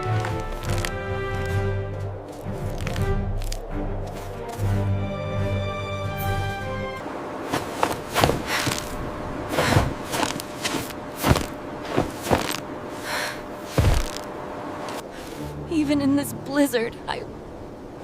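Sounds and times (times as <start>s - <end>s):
thuds and crunches: 0.0s - 1.5s, 7.5s - 9.0s, 9.6s - 12.7s, 13.7s - 14.3s
music: 0.0s - 7.0s, 15.2s - 18.0s.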